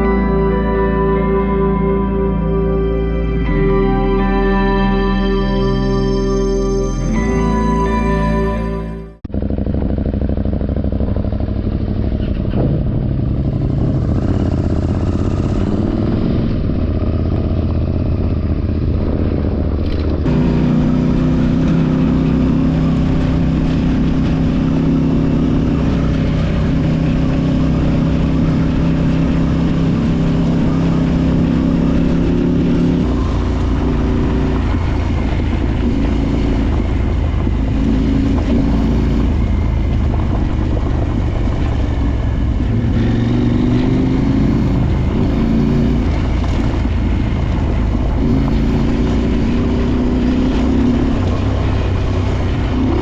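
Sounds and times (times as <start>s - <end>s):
motorcycle engine running: 0.0s - 53.0s
road and wind noise: 0.0s - 53.0s.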